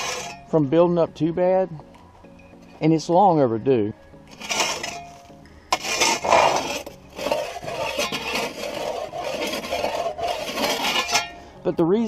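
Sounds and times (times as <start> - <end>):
dirt scraped from excavator track: 0.0 - 0.6, 4.3 - 11.4
background music: 0.0 - 12.0.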